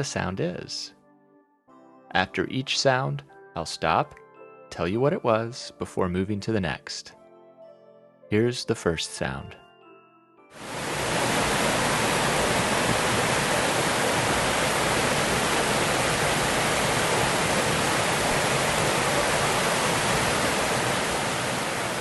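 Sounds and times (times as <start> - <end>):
waterfall rushing: 10.6 - 22.0.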